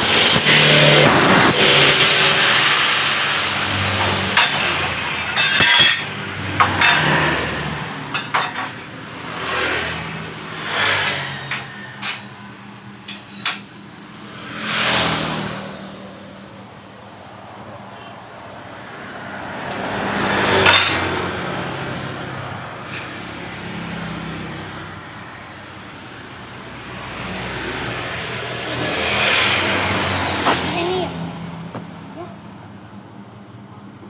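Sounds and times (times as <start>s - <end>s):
power tool cutting metal: 0.0s - 16.0s, 19.6s - 30.7s
engine-like sound: 0.0s - 33.6s
metal knocks and clanks: 3.6s - 10.3s.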